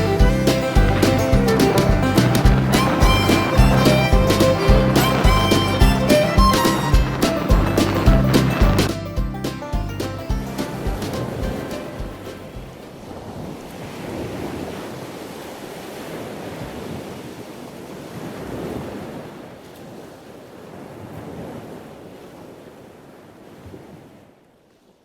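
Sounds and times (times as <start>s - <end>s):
surf breaking on beach: 0.0s - 9.1s, 10.0s - 24.3s
wind buffeting microphone: 0.0s - 17.4s.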